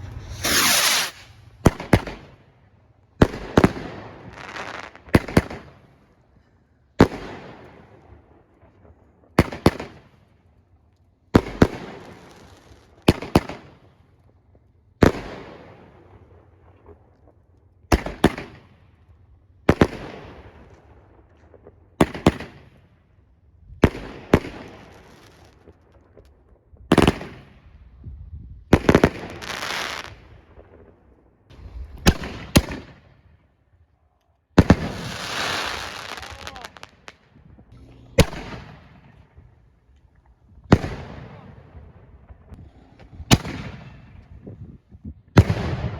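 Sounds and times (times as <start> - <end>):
fireworks bangs: 0.0 - 2.6, 28.6 - 33.2, 34.6 - 45.9
fireworks crackling: 0.0 - 5.8, 11.4 - 15.9, 23.8 - 27.6, 28.6 - 33.1, 34.6 - 44.6.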